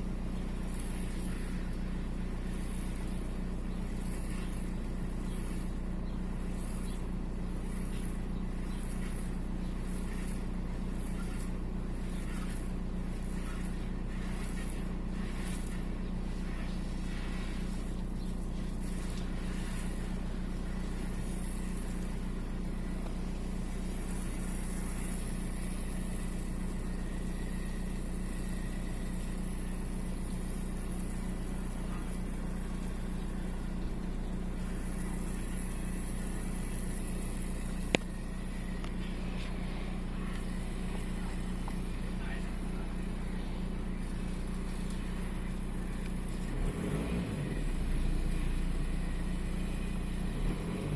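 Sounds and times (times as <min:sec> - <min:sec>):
diesel engine idling with misfire: 0:00.0 - 0:50.9.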